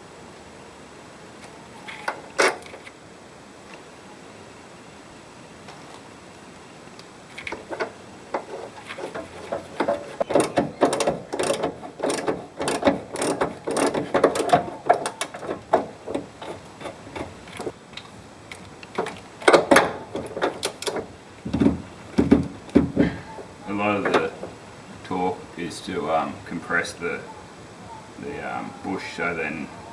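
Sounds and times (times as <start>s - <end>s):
socket ratchet clicking: 8.8s - 17.7s.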